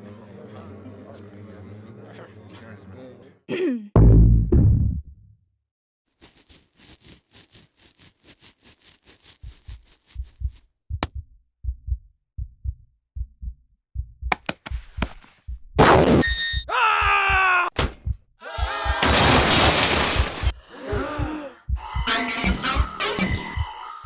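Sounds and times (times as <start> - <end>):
low heartbeat-like thumps: 4.0 - 5.2, 9.4 - 19.0, 20.2 - 23.8.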